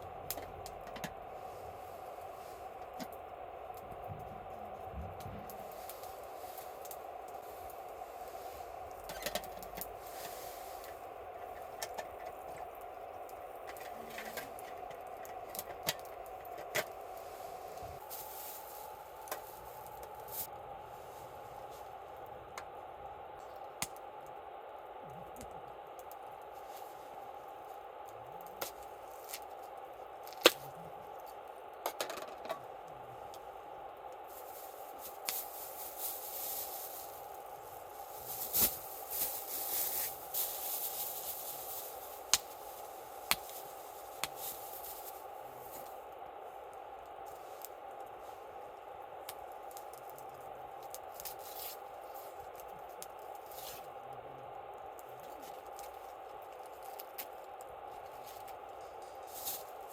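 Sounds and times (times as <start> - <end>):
campfire crackling and popping: 0.0 - 59.9
rustling and scraping handling: 5.4 - 22.0, 34.2 - 46.0, 55.0 - 59.9.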